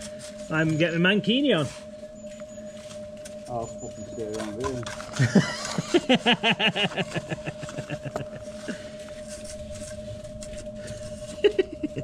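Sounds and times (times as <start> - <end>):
steady hum: 0.0 - 12.0
man laughing: 5.1 - 8.9, 11.3 - 12.0.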